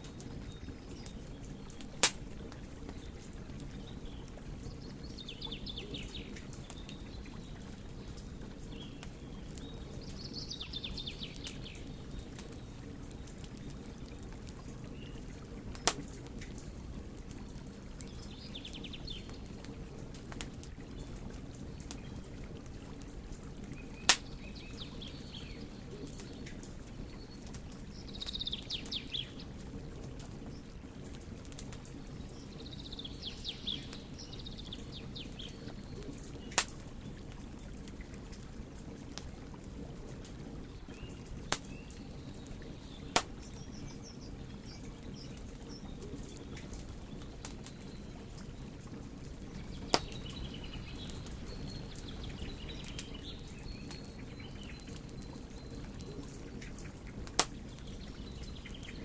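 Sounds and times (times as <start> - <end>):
birds twittering: 0.0 - 16.1, 23.7 - 29.6, 32.0 - 37.7, 40.7 - 59.0
fire crackling: 0.0 - 59.0
wood fire burning: 0.0 - 59.0
loud sharp pops: 15.8 - 16.1, 49.9 - 50.2, 57.4 - 57.6.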